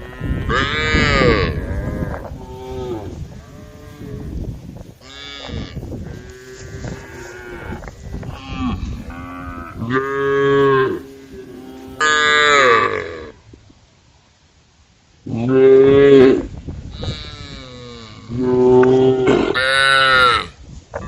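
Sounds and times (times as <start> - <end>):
cows mooing: 0.0 - 4.4, 5.0 - 13.4.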